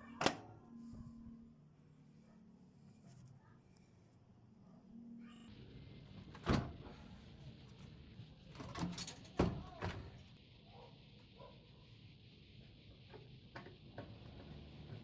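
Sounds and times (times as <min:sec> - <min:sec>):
steady hiss: 0:05.5 - 0:15.0.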